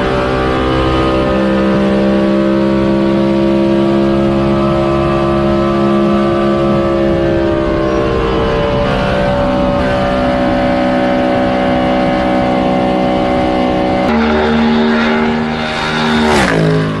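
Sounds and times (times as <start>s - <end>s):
race car engine at high revs: 0.0s - 17.0s
race car passing by: 4.6s - 17.0s.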